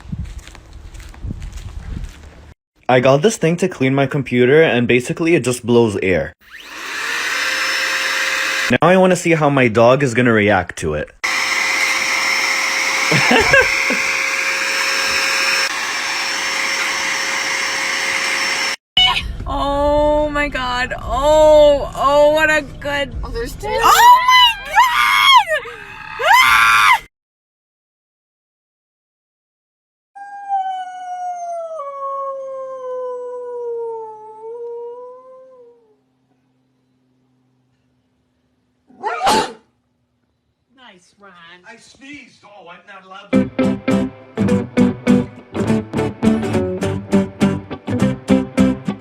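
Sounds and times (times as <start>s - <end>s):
electric air duster whirring: 6.4s - 8.7s, 11.2s - 18.8s
dog howling: 30.2s - 36.0s.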